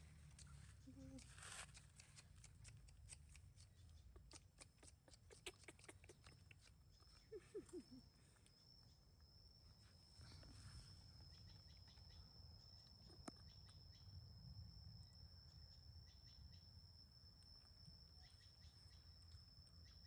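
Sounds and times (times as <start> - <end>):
faint clicks: 0.2 - 7.3
faint high-pitched tone: 7.7 - 13.4.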